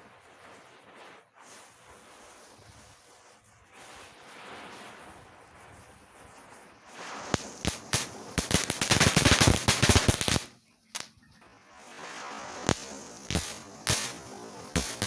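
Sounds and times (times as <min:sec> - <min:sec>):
firecrackers exploding: 0:06.9 - 0:15.0.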